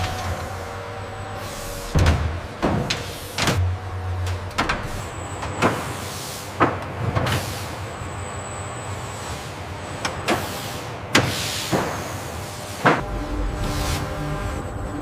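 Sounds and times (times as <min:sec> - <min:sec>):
factory machinery whirring: 0:00.0 - 0:15.0
thin high whine: 0:13.0 - 0:15.0.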